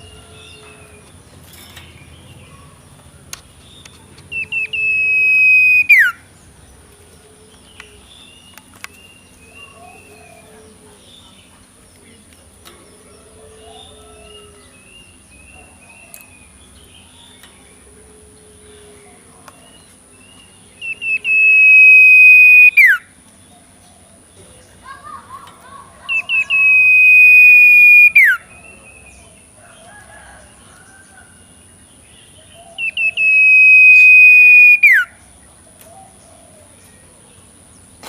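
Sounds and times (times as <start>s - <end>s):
owlet chirping: 4.3s - 6.2s, 20.8s - 23.0s, 26.1s - 28.6s, 32.8s - 35.1s
loud high whistle: 4.5s - 6.1s, 21.0s - 23.0s, 26.4s - 28.4s, 32.9s - 35.1s.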